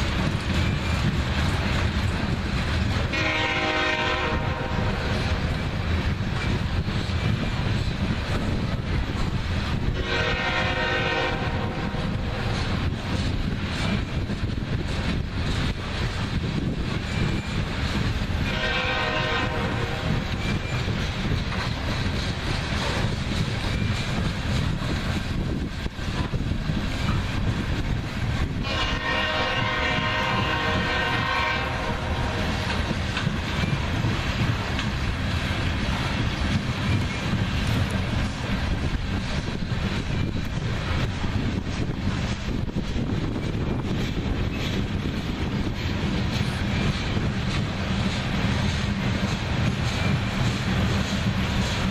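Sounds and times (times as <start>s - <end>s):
freight train rumbling on rails: 0.0s - 51.9s
locomotive horn blasts: 3.1s - 5.1s, 9.9s - 12.4s, 18.4s - 20.2s, 28.6s - 32.7s.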